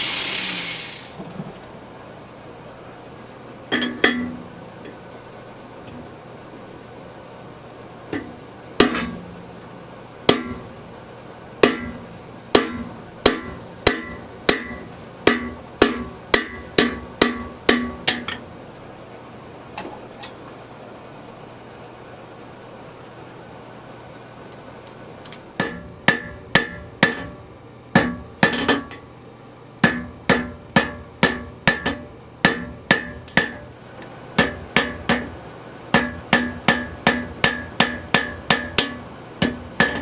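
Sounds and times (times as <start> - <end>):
hammer striking iron on anvil: 3.7 - 4.4, 8.2 - 9.3, 10.3 - 10.7, 11.6 - 18.4, 25.6 - 27.4, 28.0 - 29.0, 29.8 - 33.7, 34.4 - 40.0.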